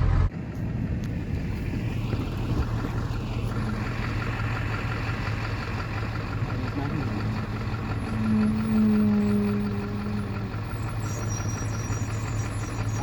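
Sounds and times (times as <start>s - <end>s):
vehicle engine low hum: 0.0s - 13.0s
pitched drone: 6.4s - 13.0s.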